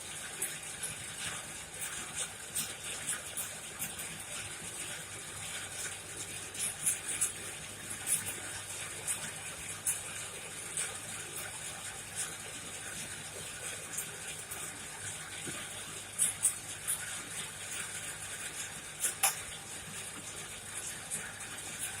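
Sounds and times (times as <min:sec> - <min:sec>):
fire crackling and popping: 0:13.8 - 0:20.3.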